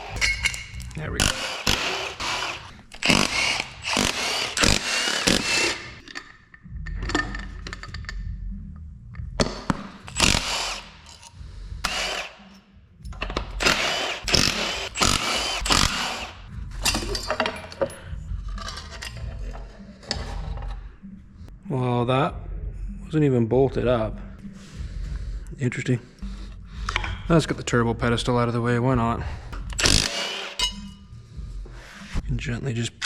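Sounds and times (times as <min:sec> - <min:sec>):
metal clatter: 0:00.0 - 0:08.3, 0:13.1 - 0:20.8
low steady hum: 0:00.0 - 0:12.3
power tool bursts: 0:01.2 - 0:06.0, 0:10.1 - 0:11.0, 0:11.8 - 0:12.4, 0:13.6 - 0:16.4, 0:29.8 - 0:30.8.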